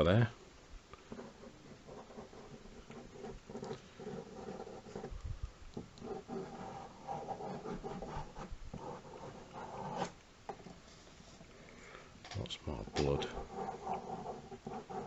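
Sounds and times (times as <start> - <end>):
pen scratching on paper: 1.1 - 5.2, 5.8 - 11.4, 12.8 - 15.0.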